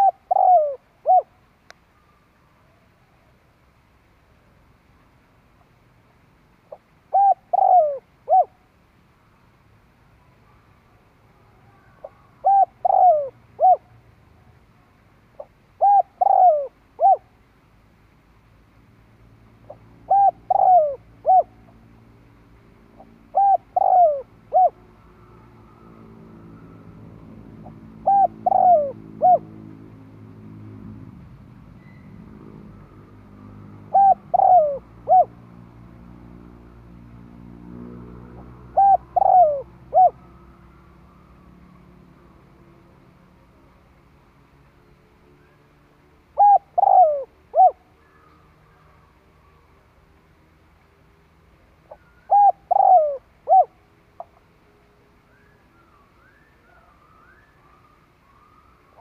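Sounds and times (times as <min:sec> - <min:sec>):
dove cooing: 0:00.0 - 0:01.4, 0:06.7 - 0:08.6, 0:11.6 - 0:14.0, 0:15.4 - 0:17.3, 0:19.7 - 0:21.8, 0:23.0 - 0:26.9, 0:27.6 - 0:29.7, 0:33.4 - 0:35.4, 0:37.8 - 0:42.0, 0:46.4 - 0:49.0, 0:51.9 - 0:54.4.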